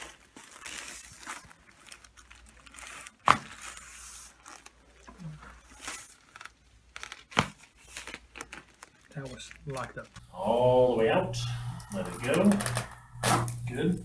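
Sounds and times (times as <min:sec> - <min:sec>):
spinal joint cracking: 0:04.5 - 0:10.3
person speaking: 0:09.7 - 0:14.0.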